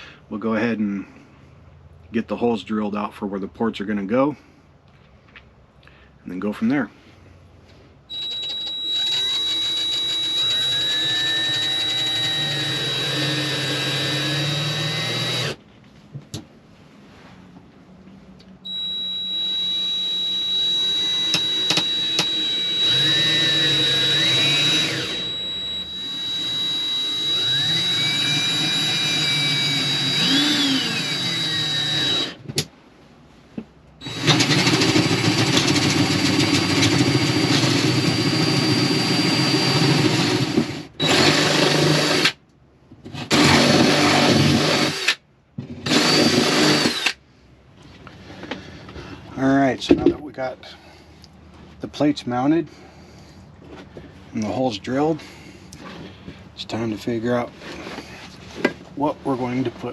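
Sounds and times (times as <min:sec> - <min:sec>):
power drill whining: 0:08.1 - 0:15.6, 0:18.7 - 0:32.4, 0:34.0 - 0:42.4, 0:43.1 - 0:45.2, 0:45.8 - 0:47.2.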